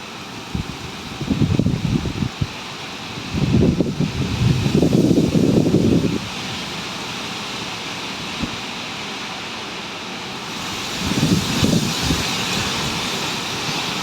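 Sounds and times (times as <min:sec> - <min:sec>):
strong wind rushing: 0:00.5 - 0:02.5, 0:03.2 - 0:06.6, 0:10.5 - 0:14.0
wind buffeting microphone: 0:00.5 - 0:06.7, 0:10.5 - 0:14.0.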